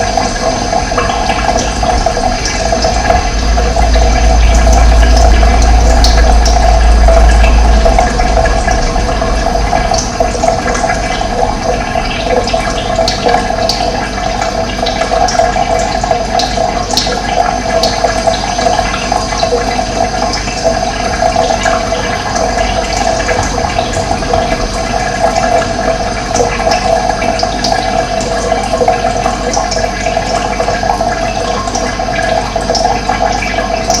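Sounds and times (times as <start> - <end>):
low rumble: 0.0 - 14.6, 20.7 - 28.4
running water flowing: 0.0 - 34.0.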